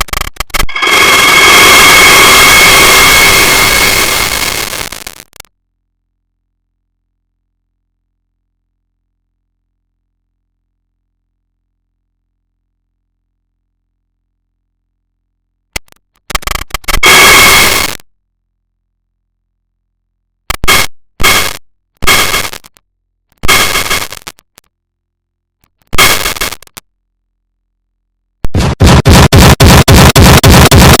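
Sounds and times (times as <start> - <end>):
harsh distorted noise blasts: 0.0 - 5.4, 16.8 - 18.0, 20.6 - 22.7, 23.4 - 24.3, 25.9 - 26.8, 28.5 - 31.0.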